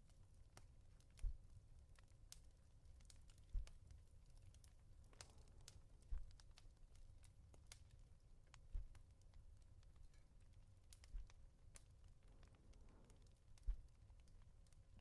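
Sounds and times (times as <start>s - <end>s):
fireplace crackling: 0.0s - 15.0s
muffled pats on a pillow: 1.1s - 1.6s, 3.0s - 4.0s, 5.1s - 6.6s, 8.5s - 9.2s, 13.2s - 14.0s.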